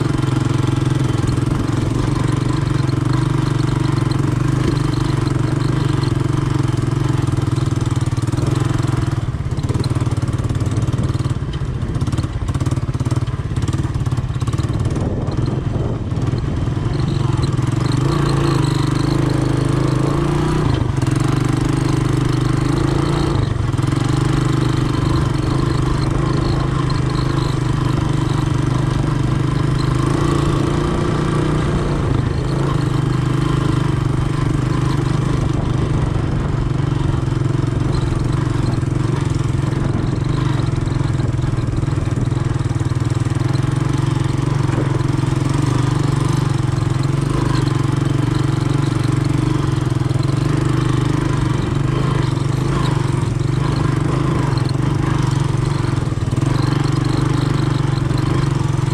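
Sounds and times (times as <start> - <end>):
four-stroke engine running steadily: 0.0 - 58.9.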